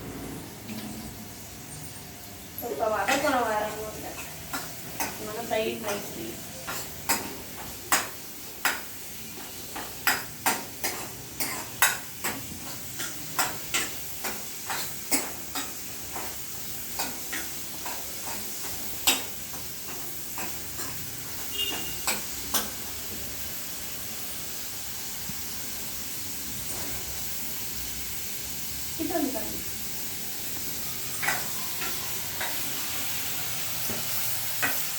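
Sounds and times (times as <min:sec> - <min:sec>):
onions sizzling in oil: 0:00.0 - 0:34.9
spoon knocking and scraping pan: 0:03.0 - 0:22.8, 0:31.2 - 0:32.7, 0:33.8 - 0:34.9.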